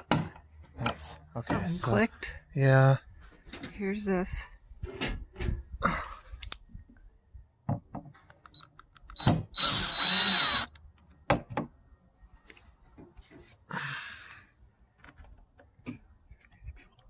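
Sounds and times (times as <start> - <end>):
cordless drill motor whine: 9.2 - 10.7
clicks and knocks of handling parts: 14.9 - 17.0.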